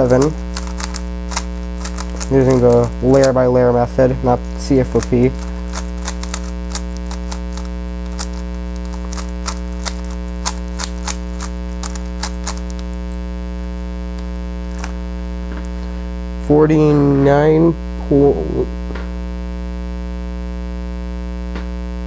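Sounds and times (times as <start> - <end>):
puzzle cube clicking: 0.0 - 13.1, 14.7 - 15.0
electrical mains hum: 0.0 - 22.0.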